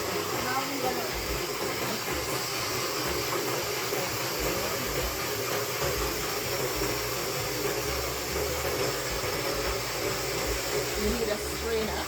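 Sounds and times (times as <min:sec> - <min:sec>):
electric blender running: 0:00.0 - 0:12.0.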